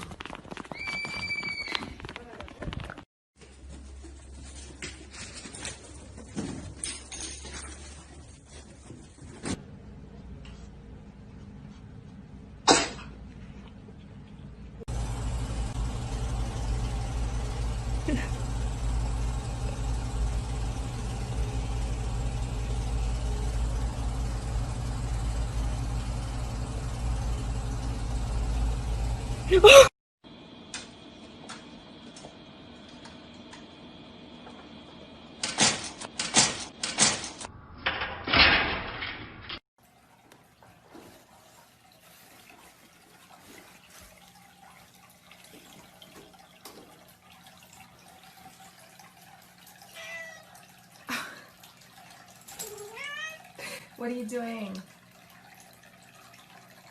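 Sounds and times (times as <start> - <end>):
low engine rumble: 13.4 - 29.9
trickling water with drips: 39.8 - 56.9.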